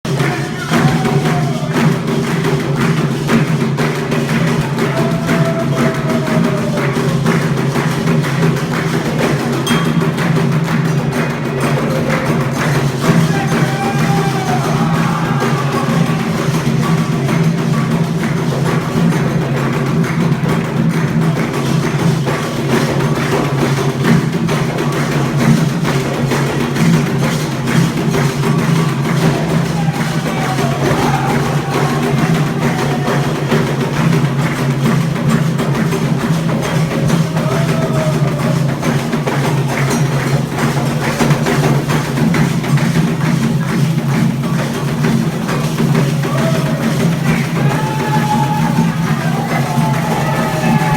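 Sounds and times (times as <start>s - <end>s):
drums: 0.0s - 50.9s
wood block strikes: 0.1s - 50.9s
loud music: 28.4s - 35.3s.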